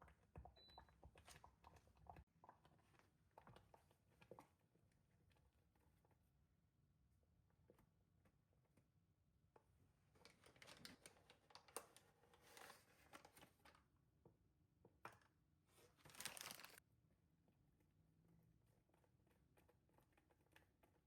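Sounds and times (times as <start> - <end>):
crinkling and rustling: 10.1 - 13.9, 15.7 - 16.8.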